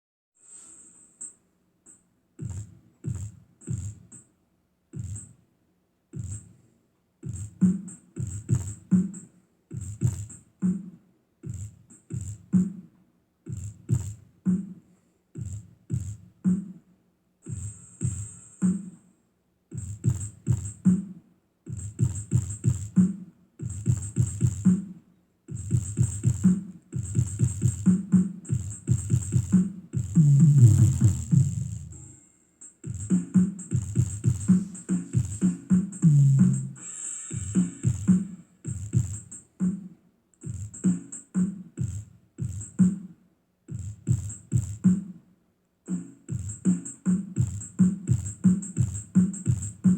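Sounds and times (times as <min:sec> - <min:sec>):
bass-heavy electronic music: 0:25.6 - 0:32.2, 0:32.9 - 0:39.3.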